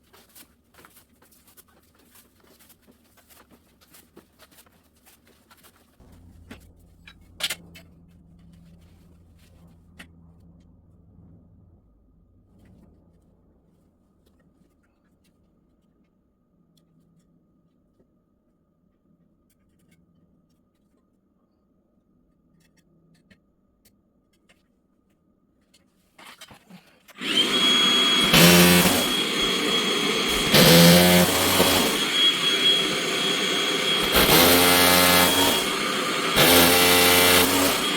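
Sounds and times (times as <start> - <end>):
power tool whining: 27.1 - 37.9.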